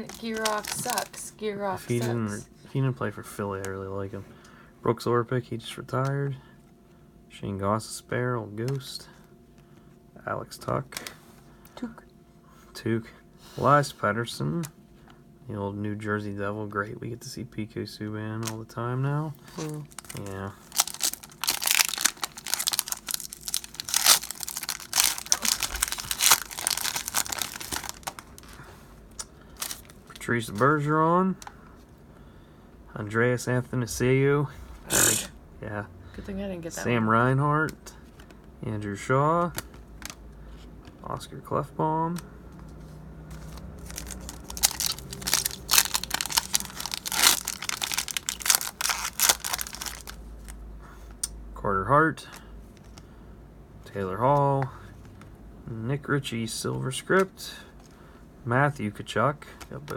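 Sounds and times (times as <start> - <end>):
foil wrapper crinkling and tearing: 0.0 - 1.3, 19.4 - 30.9, 43.3 - 50.6.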